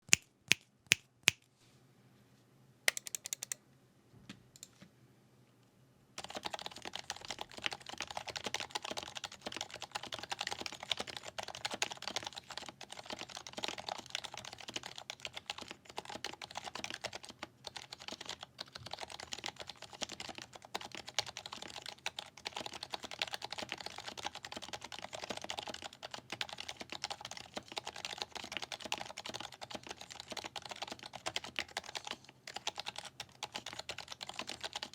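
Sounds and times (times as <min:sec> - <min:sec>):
keyboard typing: 0:02.9 - 0:03.6, 0:06.2 - 0:34.9.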